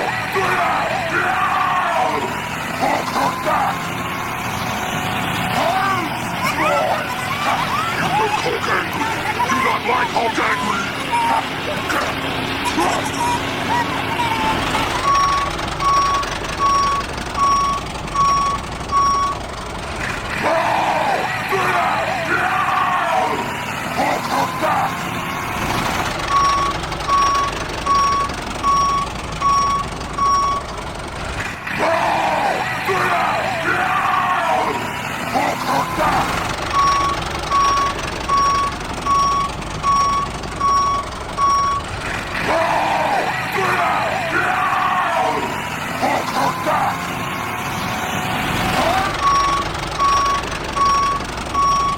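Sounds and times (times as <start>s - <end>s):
person shouting: 0.0s - 3.8s, 20.3s - 25.0s, 31.7s - 36.3s, 42.4s - 47.1s
person yelling: 0.0s - 3.8s, 20.3s - 25.0s, 31.7s - 36.4s, 42.4s - 47.1s
vehicle reversing alarm beeping: 1.8s - 19.9s, 23.4s - 31.3s, 34.8s - 44.6s, 45.2s - 51.9s.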